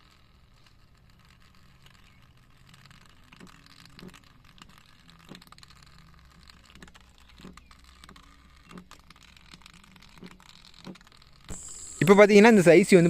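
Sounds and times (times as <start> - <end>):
low steady hum: 11.5 - 13.0.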